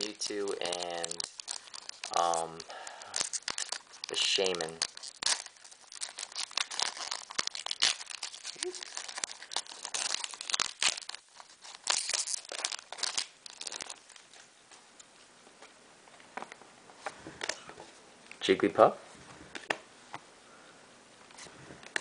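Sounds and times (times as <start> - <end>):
foil wrapper crinkling and tearing: 0.0 - 14.5.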